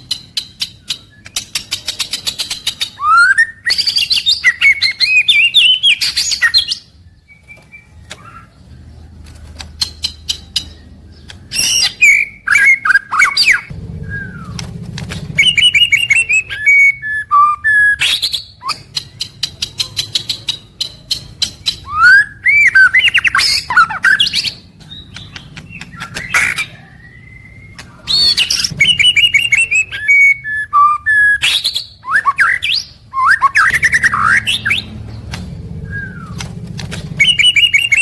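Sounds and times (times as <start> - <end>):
bird whistling song: 0.0 - 8.8, 9.6 - 38.0
bird ticking calls: 9.4 - 17.3, 17.9 - 38.0.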